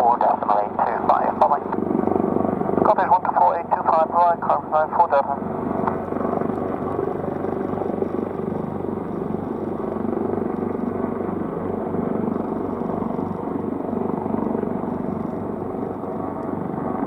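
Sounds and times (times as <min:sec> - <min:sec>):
jet aircraft rumble: 0:00.0 - 0:17.0.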